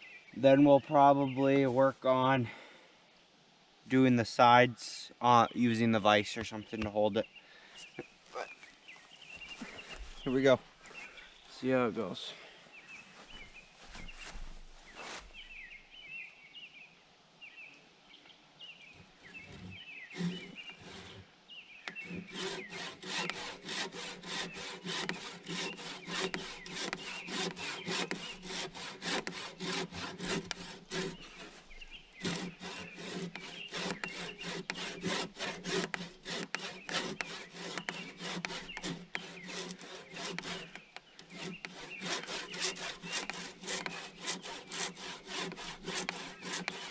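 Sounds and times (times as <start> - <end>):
handsaw cutting log: 19.4 - 21.3, 21.9 - 46.9.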